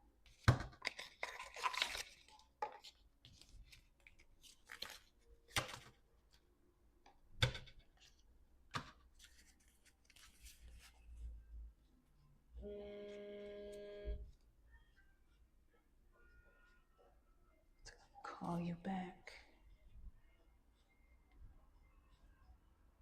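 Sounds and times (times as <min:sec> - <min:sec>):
cards rustling while shuffled: 0:00.3 - 0:06.0, 0:08.8 - 0:11.1
cards slapping: 0:00.4 - 0:06.0.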